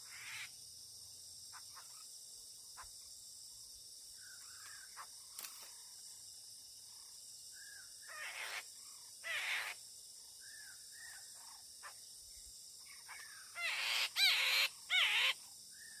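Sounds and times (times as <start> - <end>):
high insect hiss: 0.0 - 16.0
bird calling: 7.6 - 9.8, 12.9 - 16.0.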